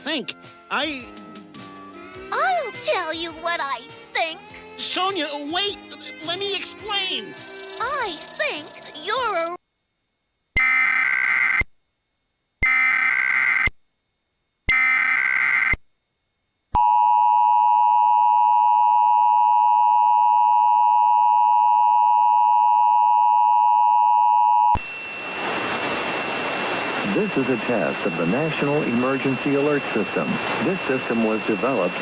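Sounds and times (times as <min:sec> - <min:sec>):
screeching data bursts: 0:07.4 - 0:09.2, 0:10.6 - 0:11.7, 0:12.6 - 0:13.7, 0:14.7 - 0:15.8.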